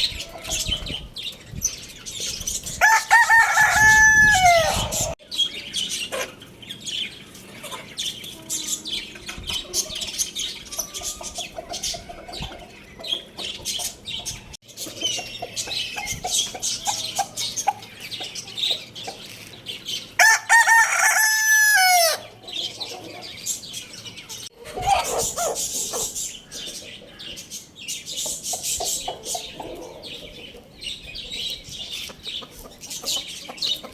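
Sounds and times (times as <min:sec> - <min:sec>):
rooster crowing: 0:02.8 - 0:05.2, 0:20.2 - 0:22.2
chicken clucks: 0:06.1 - 0:06.4, 0:07.5 - 0:19.5, 0:24.3 - 0:27.1, 0:28.1 - 0:33.9.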